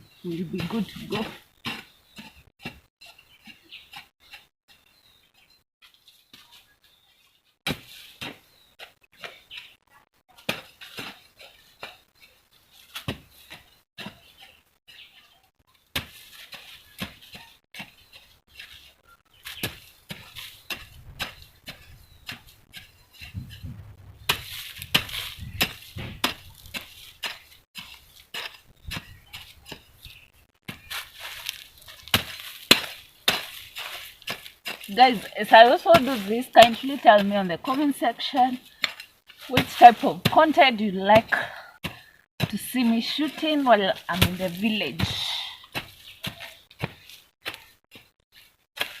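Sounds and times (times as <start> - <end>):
metal hand tool striking soil: 15.9 - 23.6, 24.3 - 48.0, 48.8 - 49.0.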